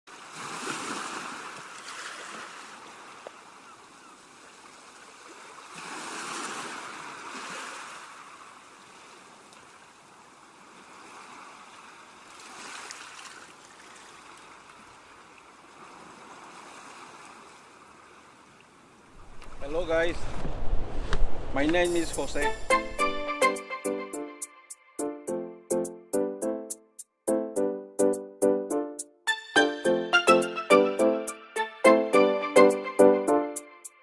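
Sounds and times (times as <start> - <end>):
sea waves washing in: 0.1 - 3.1, 4.8 - 14.3, 15.6 - 23.3.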